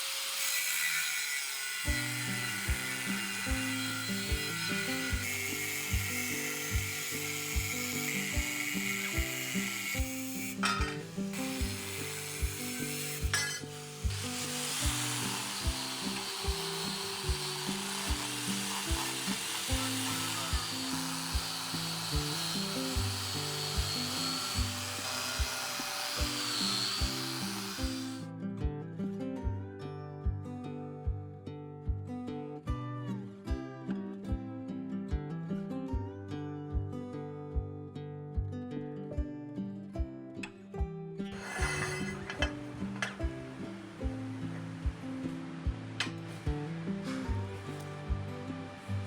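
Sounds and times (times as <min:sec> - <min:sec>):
power tool whining: 0:00.0 - 0:28.2, 0:41.3 - 0:49.0
background music with steady beat: 0:01.9 - 0:49.0
background music with beat: 0:06.7 - 0:07.0, 0:07.6 - 0:07.8, 0:11.6 - 0:11.8, 0:12.4 - 0:12.6, 0:13.2 - 0:17.5, 0:41.6 - 0:49.0.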